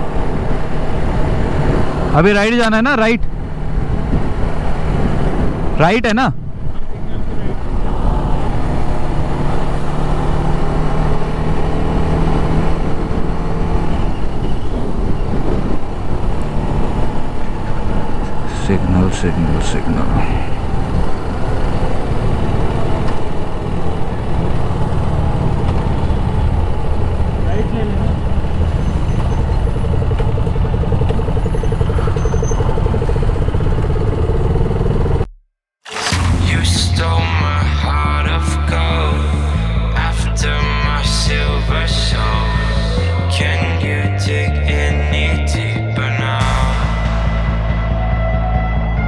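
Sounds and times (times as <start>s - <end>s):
road and wind noise: 0.0s - 35.3s, 35.9s - 49.0s
motorcycle engine running: 6.4s - 43.0s, 46.0s - 49.0s
motorcycle engine idling: 20.4s - 35.4s.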